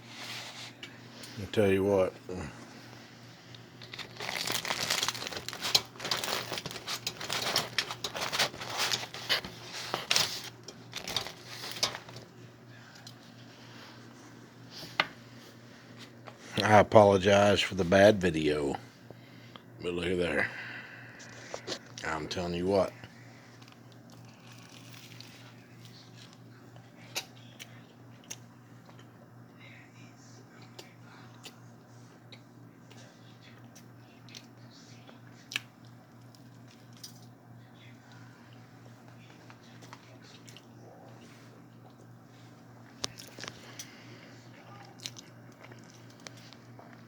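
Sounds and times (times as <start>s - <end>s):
steady low hum: 0.0s - 47.0s
crinkling and crackling: 2.3s - 13.2s, 23.6s - 26.4s, 42.9s - 44.0s, 44.8s - 47.0s.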